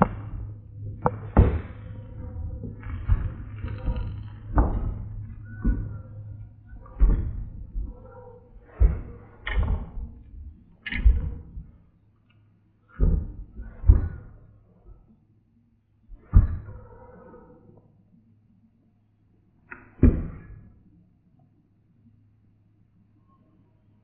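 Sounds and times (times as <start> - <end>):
knocks and thuds: 0.0 - 10.2, 13.0 - 14.3
steady low hum: 0.0 - 24.0.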